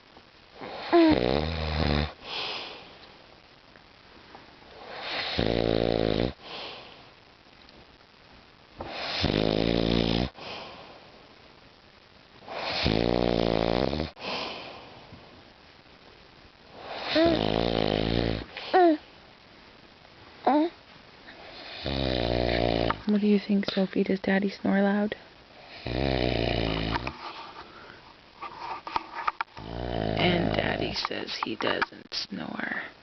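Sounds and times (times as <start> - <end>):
man snoring deeply: 0.8 - 2.2, 4.9 - 6.4, 9.0 - 10.4, 12.6 - 14.2, 16.9 - 18.5, 21.6 - 23.0, 25.7 - 27.1, 29.6 - 30.5.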